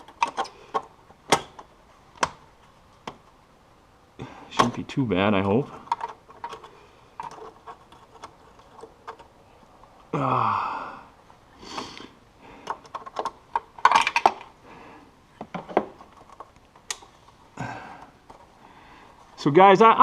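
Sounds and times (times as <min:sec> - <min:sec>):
groan falling in pitch: 0:10.1 - 0:11.1.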